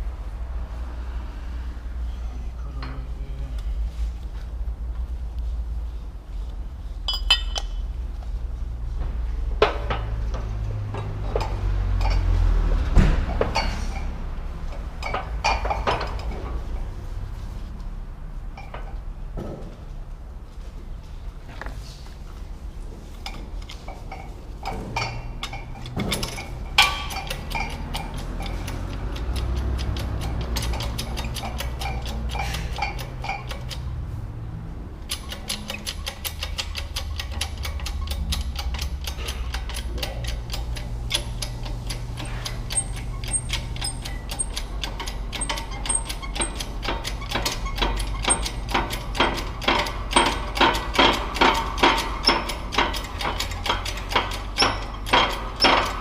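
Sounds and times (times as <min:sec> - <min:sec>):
low steady hum: 0:00.0 - 0:29.2
ratchet wrench clicking: 0:23.2 - 0:34.1, 0:35.0 - 0:56.0
metal knocks: 0:23.9 - 0:34.1, 0:35.1 - 0:56.0.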